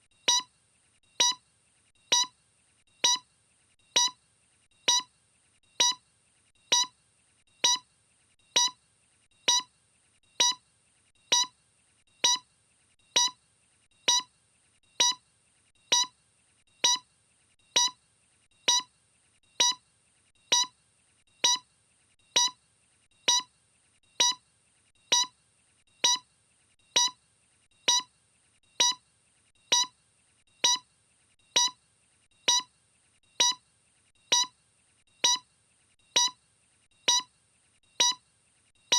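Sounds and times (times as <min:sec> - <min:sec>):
short electronic beeps: 0:00.3 - 0:00.5, 0:01.2 - 0:01.4, 0:02.1 - 0:02.3, 0:03.0 - 0:03.2, 0:04.0 - 0:04.2, 0:04.9 - 0:05.1, 0:05.8 - 0:06.0, 0:06.7 - 0:06.9, 0:07.6 - 0:07.8, 0:08.6 - 0:08.8, 0:09.5 - 0:09.7, 0:10.4 - 0:10.6, 0:11.3 - 0:11.5, 0:12.2 - 0:12.4, 0:13.2 - 0:13.4, 0:14.1 - 0:14.3, 0:15.0 - 0:15.2, 0:15.9 - 0:16.1, 0:16.8 - 0:17.0, 0:17.8 - 0:18.0, 0:18.7 - 0:18.9, 0:19.6 - 0:19.8, 0:20.5 - 0:20.7, 0:21.4 - 0:21.6, 0:22.4 - 0:22.6, 0:23.3 - 0:23.5, 0:24.2 - 0:24.4, 0:25.1 - 0:25.3, 0:26.0 - 0:26.2, 0:27.0 - 0:27.2, 0:27.9 - 0:28.1, 0:28.8 - 0:29.0, 0:29.7 - 0:29.9, 0:30.6 - 0:30.8, 0:31.6 - 0:31.8, 0:32.5 - 0:32.7, 0:33.4 - 0:33.6, 0:34.3 - 0:34.5, 0:35.2 - 0:35.4, 0:36.2 - 0:36.4, 0:37.1 - 0:37.3, 0:38.0 - 0:38.2.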